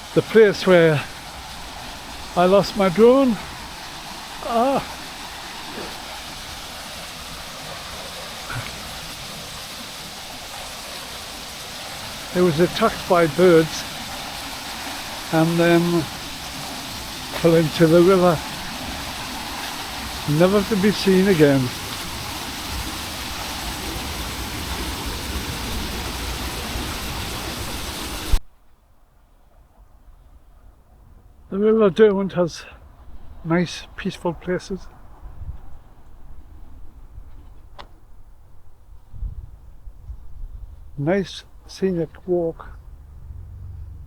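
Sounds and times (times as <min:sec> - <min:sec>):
river water rushing: 0:00.0 - 0:28.4.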